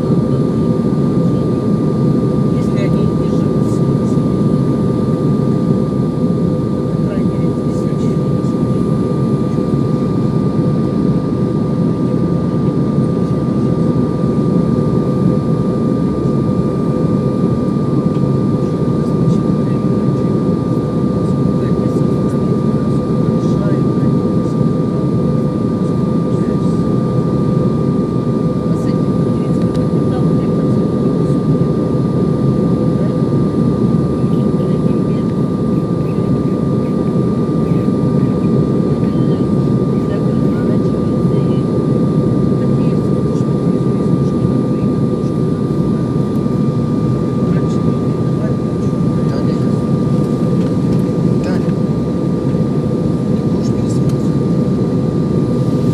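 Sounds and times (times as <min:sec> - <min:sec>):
aircraft engine and airflow rush: 0:00.0 - 0:55.9
airliner cabin drone: 0:00.0 - 0:55.9
thin constant whine: 0:00.0 - 0:55.9.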